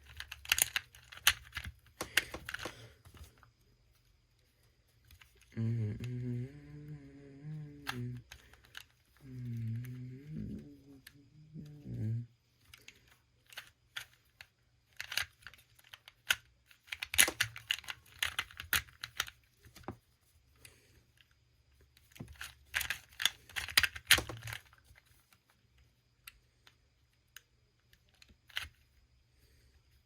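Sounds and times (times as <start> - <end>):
puzzle cube clicking: 0.0 - 3.3, 5.0 - 12.0, 12.7 - 19.9, 22.0 - 25.1.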